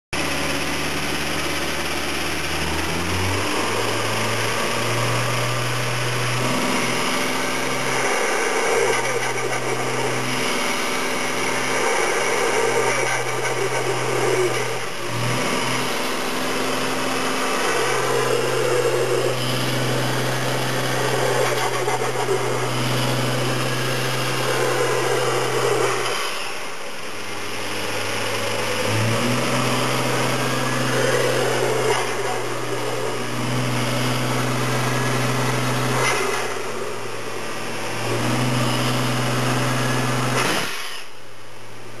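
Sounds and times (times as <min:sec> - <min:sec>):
car engine revving: 0:00.2 - 0:41.1
turbo flutter: 0:00.5 - 0:27.2.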